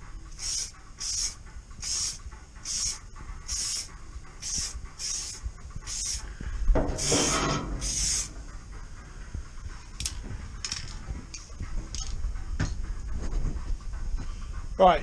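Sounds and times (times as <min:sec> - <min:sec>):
aerosol spray hissing: 0:00.3 - 0:06.3, 0:07.8 - 0:08.3.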